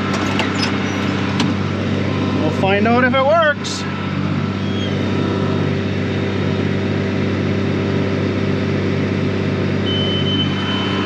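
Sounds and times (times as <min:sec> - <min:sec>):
tractor engine running under load: 0:00.0 - 0:11.0
steady high beep: 0:09.8 - 0:11.0.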